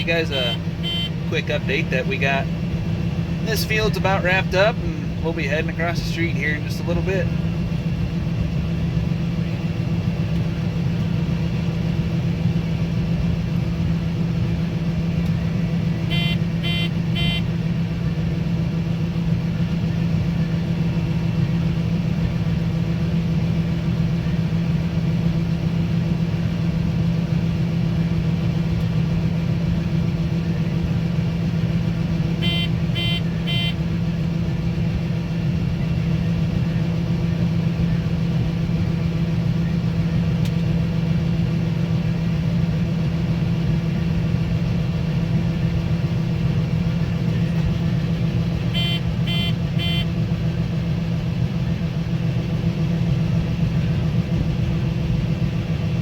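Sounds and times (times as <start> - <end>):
quick electronic beeps: 0.0 - 1.1, 16.1 - 17.4, 32.4 - 33.8, 48.8 - 50.0
diesel engine running: 0.0 - 56.0.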